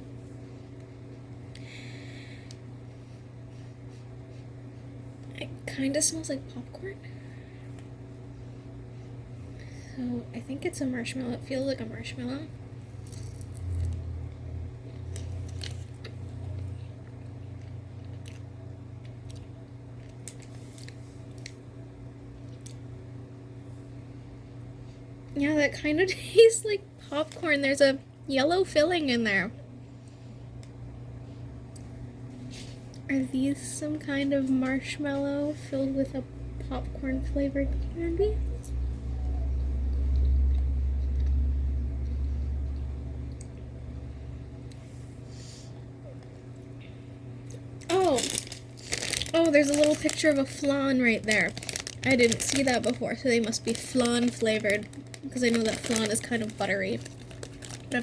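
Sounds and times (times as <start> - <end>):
steady low hum: 0.0 - 58.0
person chewing soft candy: 14.9 - 21.6, 38.6 - 43.6
deep rumble: 36.3 - 44.7.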